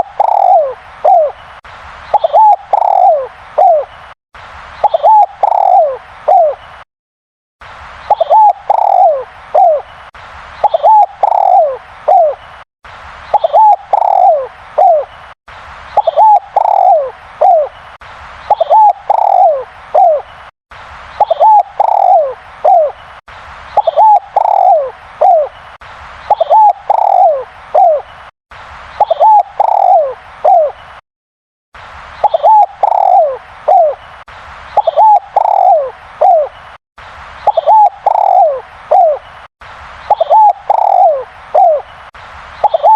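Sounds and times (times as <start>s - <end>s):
dove cooing: 0.0s - 1.4s, 2.1s - 3.9s, 4.8s - 6.6s, 8.1s - 9.8s, 10.6s - 12.4s, 13.4s - 15.1s, 16.0s - 17.7s, 18.5s - 20.2s, 21.2s - 23.0s, 23.8s - 25.5s, 26.3s - 28.0s, 29.0s - 30.8s, 32.2s - 34.0s, 34.8s - 36.5s, 37.5s - 39.2s, 40.1s - 41.8s, 42.6s - 42.9s.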